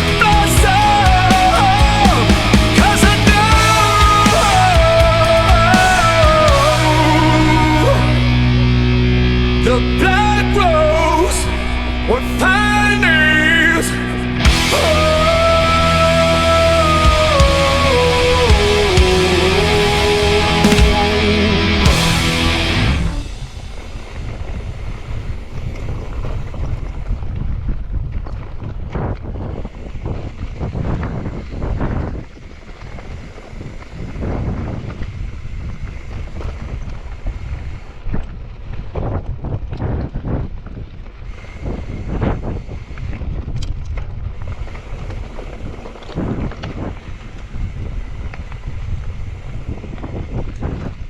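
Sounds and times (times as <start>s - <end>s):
low rumble: 0.0s - 30.1s
wind buffeting microphone: 0.0s - 51.0s
bike rattling over rough ground: 23.2s - 30.0s.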